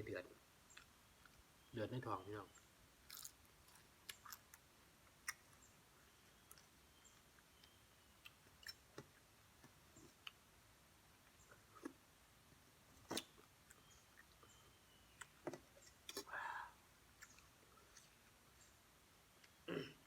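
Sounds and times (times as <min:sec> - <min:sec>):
faint chewing clicks: 0:00.7 - 0:01.4, 0:02.5 - 0:10.5, 0:13.0 - 0:16.3, 0:17.0 - 0:19.7.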